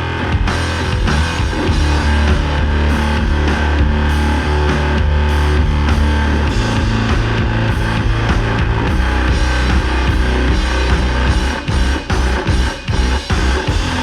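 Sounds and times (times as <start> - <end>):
heavy electric guitar riff: 0.0 - 14.0.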